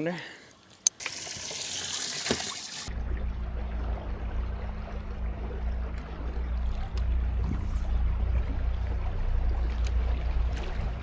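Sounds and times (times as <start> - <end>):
moving water: 0.0 - 11.0
water gushing with a hiss: 0.8 - 2.9
boat motor humming: 2.7 - 11.0.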